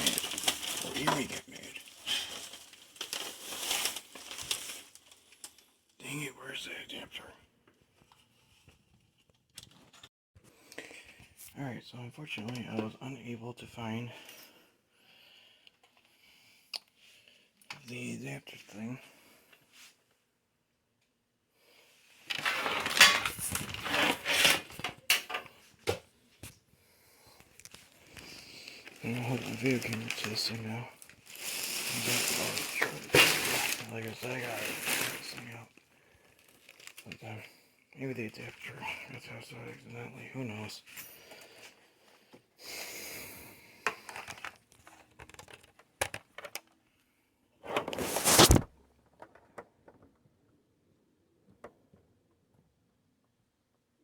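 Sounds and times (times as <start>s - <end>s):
rustling and crinkling: 0.0s - 6.0s, 22.1s - 26.7s, 27.3s - 37.5s, 43.8s - 46.9s, 47.6s - 50.5s
objects scraping and rubbing: 22.3s - 25.1s, 47.6s - 48.6s.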